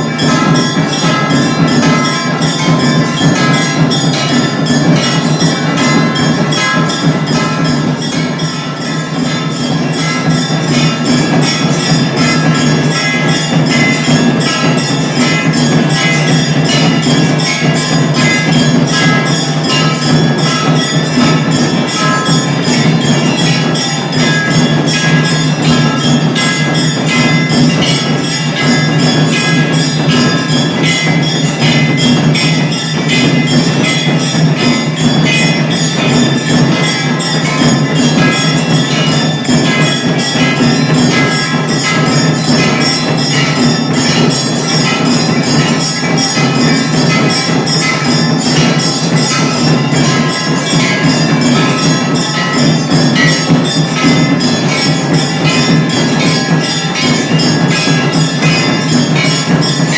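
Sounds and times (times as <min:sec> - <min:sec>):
rapid percussion with bell tones: 0:00.0 - 0:59.9.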